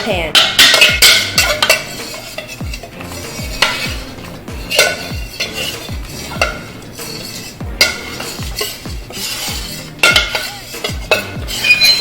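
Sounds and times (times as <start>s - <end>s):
kitchen utensils clattering: 0.0s - 12.0s
music with deep bass thumps: 2.6s - 7.0s, 7.6s - 12.0s.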